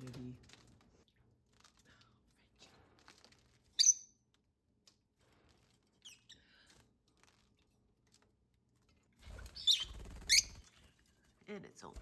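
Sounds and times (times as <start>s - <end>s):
parrots chirping: 3.8s - 4.2s, 9.4s - 10.7s.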